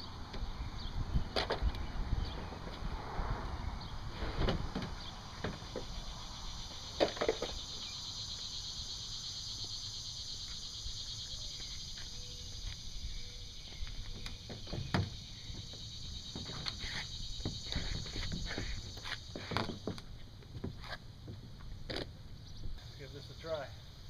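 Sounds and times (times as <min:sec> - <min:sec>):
knocks and clunks: 0:14.0 - 0:22.0.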